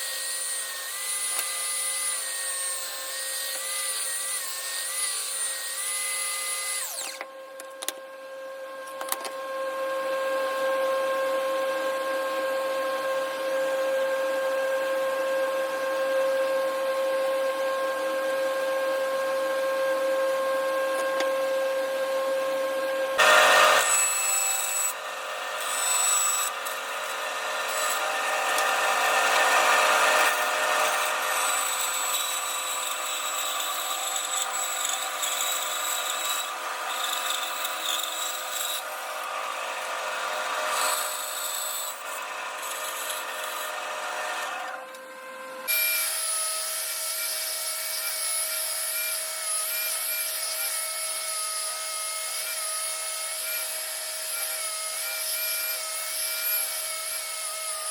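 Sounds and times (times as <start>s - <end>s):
tool grinding wood: 0.0s - 7.3s, 23.2s - 45.0s
whining power tool: 0.0s - 57.9s.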